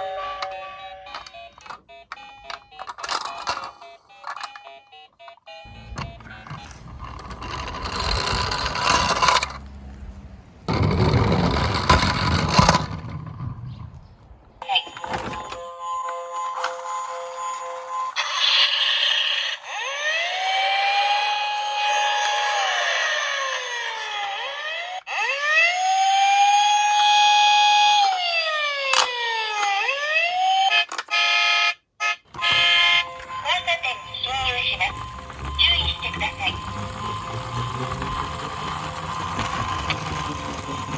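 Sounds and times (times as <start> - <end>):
toy car wheels rolling and rattling: 0.2 - 14.0, 16.5 - 31.2, 32.4 - 40.9
police siren wailing: 5.4 - 10.1, 16.7 - 40.9.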